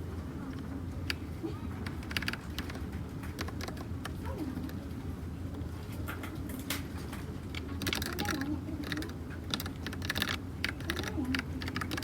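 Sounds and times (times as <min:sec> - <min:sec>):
mechanical keyboard typing: 0:01.8 - 0:04.8, 0:07.6 - 0:12.0.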